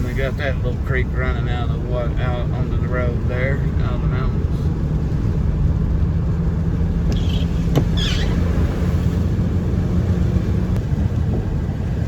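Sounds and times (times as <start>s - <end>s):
car rumble from inside: 0.0s - 12.0s
brief high squeaks: 7.1s - 8.6s.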